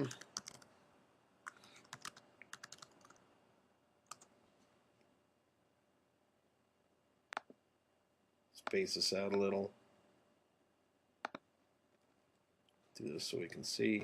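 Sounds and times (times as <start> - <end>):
typing on computer keyboard: 0.0 - 0.7, 1.4 - 3.2, 4.1 - 4.3, 11.2 - 11.4.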